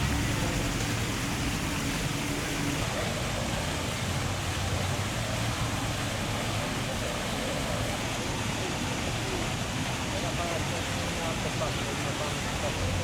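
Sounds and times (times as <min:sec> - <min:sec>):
low engine hum: 0:00.0 - 0:08.0
outdoor street noise: 0:00.0 - 0:13.0.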